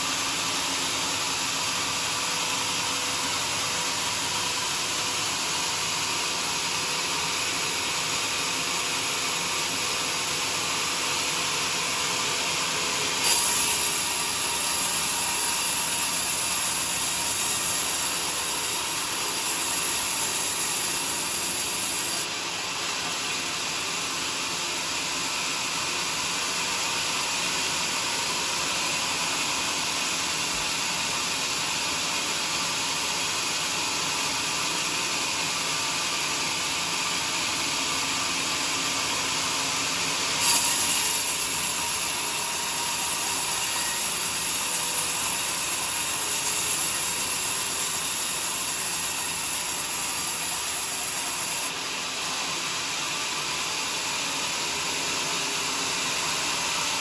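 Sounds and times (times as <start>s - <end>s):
sawmill blade sawing log: 0.0s - 25.1s, 36.1s - 52.5s.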